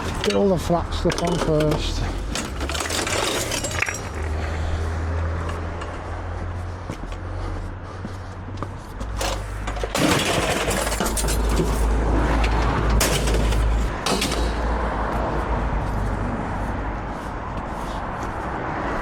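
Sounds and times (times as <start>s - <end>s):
scrap metal clattering: 0.0s - 4.8s, 9.0s - 14.8s
steady low rumble: 11.4s - 18.6s.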